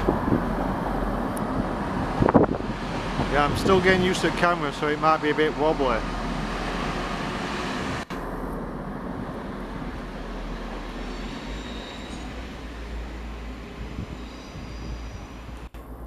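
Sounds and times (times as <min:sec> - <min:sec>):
train rumbling through station: 0:00.0 - 0:16.0.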